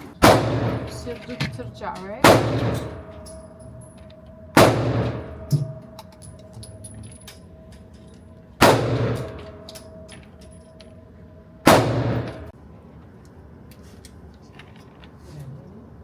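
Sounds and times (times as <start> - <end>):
pistol shots with echo: 0.2 - 1.2, 2.2 - 3.9, 4.6 - 6.3, 8.6 - 10.0, 11.6 - 12.5.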